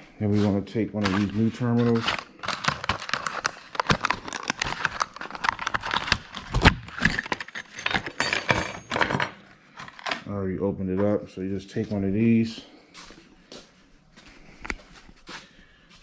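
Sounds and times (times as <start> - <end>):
metal clamps clicking and rattling: 7.0 - 10.2.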